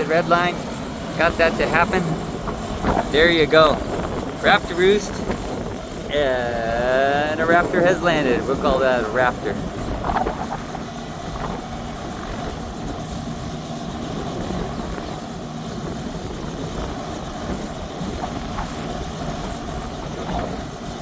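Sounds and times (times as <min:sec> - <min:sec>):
helicopter idling: 0:00.0 - 0:21.0.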